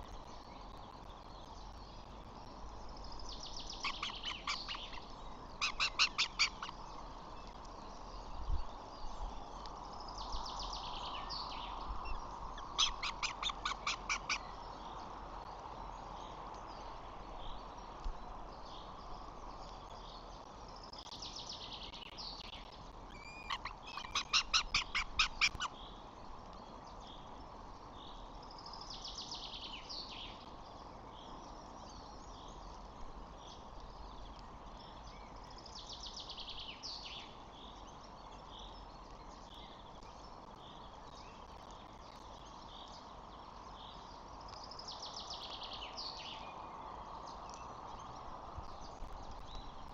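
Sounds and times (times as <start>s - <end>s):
steady outdoor hiss: 0.0s - 49.9s
birds calling: 3.4s - 7.6s, 10.3s - 15.0s, 23.1s - 26.0s.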